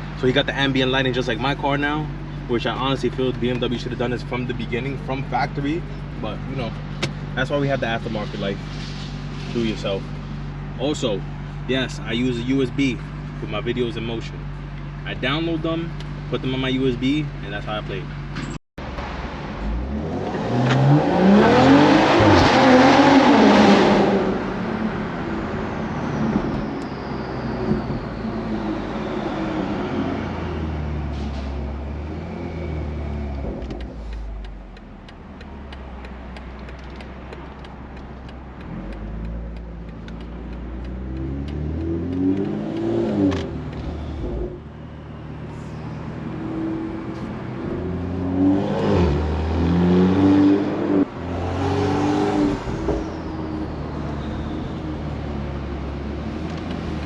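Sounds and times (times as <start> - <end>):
car engine accelerating hard: 18.9 - 57.0.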